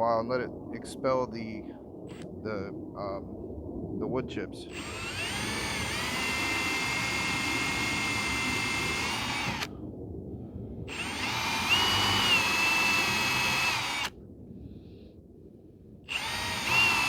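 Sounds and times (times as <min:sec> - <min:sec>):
power drill boring through wood: 0:04.7 - 0:09.7, 0:10.9 - 0:14.1, 0:16.1 - 0:17.0.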